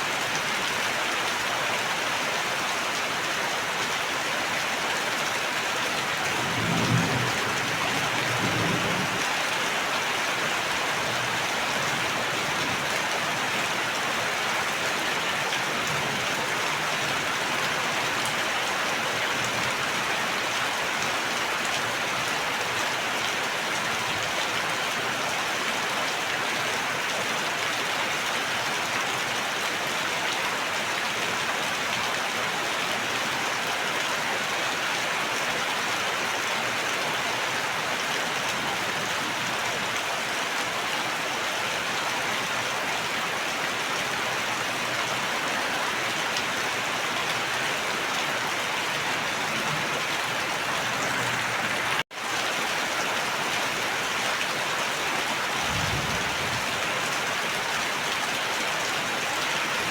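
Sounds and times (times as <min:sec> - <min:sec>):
heavy rain pattering: 0:02.5 - 0:28.2, 0:35.8 - 0:59.9.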